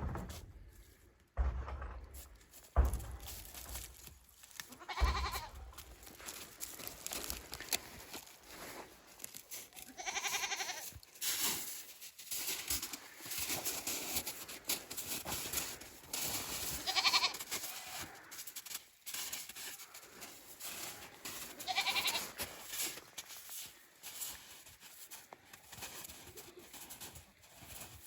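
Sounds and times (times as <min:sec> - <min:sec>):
rustling and shuffling: 0:00.0 - 0:28.0
goats bleating: 0:04.7 - 0:06.0, 0:09.8 - 0:11.0, 0:16.7 - 0:18.2, 0:21.1 - 0:22.6.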